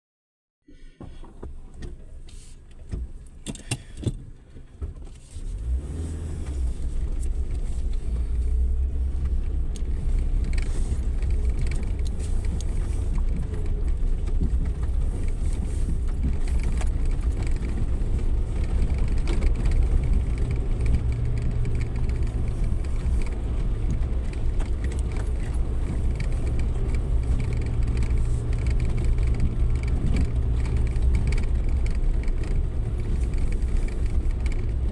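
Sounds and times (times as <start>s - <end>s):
engine running with low drone: 0.7s - 34.9s
clicks and rattles: 9.1s - 34.9s.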